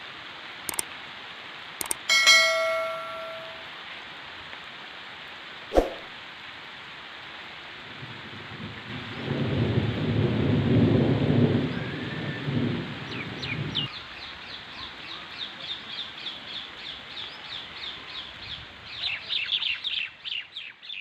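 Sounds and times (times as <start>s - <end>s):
steady rain: 0.0s - 21.0s
thunder rumbling: 8.5s - 13.8s.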